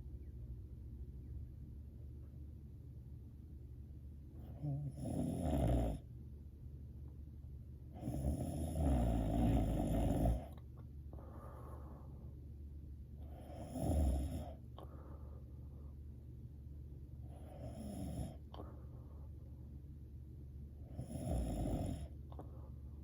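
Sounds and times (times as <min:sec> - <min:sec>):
person snoring: 0:04.4 - 0:06.0, 0:08.0 - 0:10.6, 0:13.3 - 0:14.6, 0:17.3 - 0:18.6, 0:20.9 - 0:22.2
soft breath out: 0:11.1 - 0:12.4, 0:14.8 - 0:16.0.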